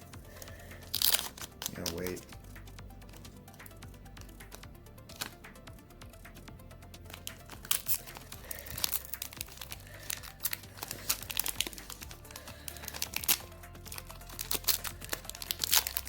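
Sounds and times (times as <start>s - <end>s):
quiet background music: 0.0s - 16.0s
foil wrapper crinkling and tearing: 0.8s - 2.2s, 7.1s - 16.0s.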